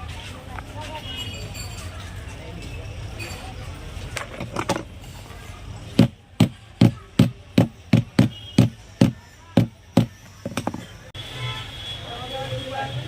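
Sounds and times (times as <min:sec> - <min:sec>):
hammer tapping: 0:06.0 - 0:10.8.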